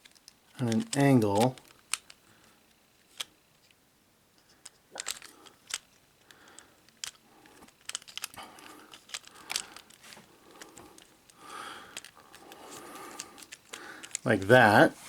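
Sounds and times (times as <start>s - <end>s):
plastic toy parts clicking: 0.0s - 2.3s, 2.9s - 3.8s, 4.4s - 14.3s
soft rustling: 7.4s - 15.0s.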